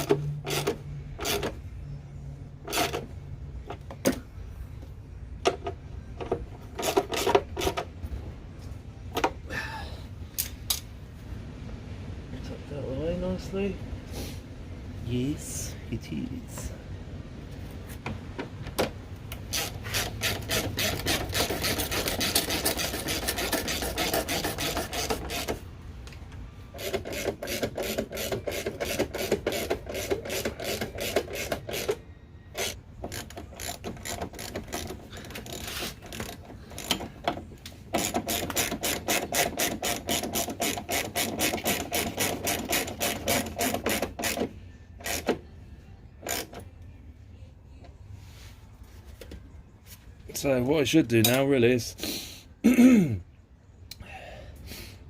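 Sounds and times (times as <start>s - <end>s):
ratchet wrench clicking: 0.0s - 1.6s, 6.2s - 7.8s, 19.3s - 25.6s, 26.8s - 32.0s, 32.6s - 37.2s, 37.9s - 45.4s, 46.2s - 46.6s.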